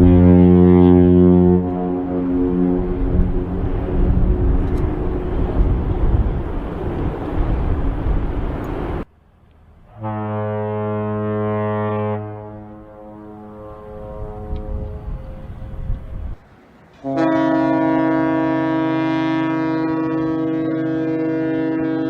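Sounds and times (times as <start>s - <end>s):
loud rough ship horn blast: 0.0s - 5.9s, 9.9s - 16.0s, 17.0s - 22.0s
deep steady ship horn blast: 0.0s - 6.4s, 9.9s - 22.0s.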